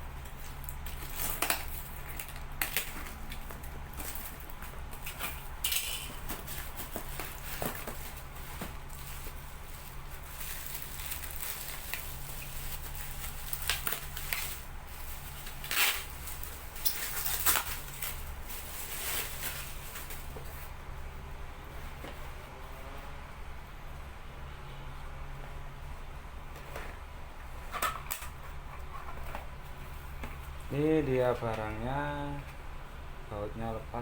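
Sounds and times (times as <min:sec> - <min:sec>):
steady low hum: 0:00.0 - 0:34.0
packaging rustling and scraping: 0:00.2 - 0:20.8, 0:27.6 - 0:30.6.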